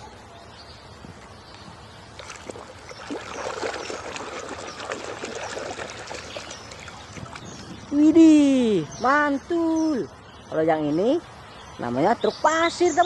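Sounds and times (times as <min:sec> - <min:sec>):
water splashing and trickling: 0:01.8 - 0:08.2.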